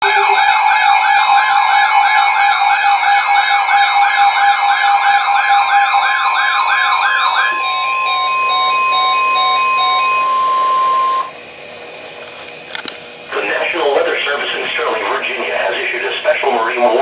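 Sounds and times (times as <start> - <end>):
electronic yelp siren: 0.0 - 11.3.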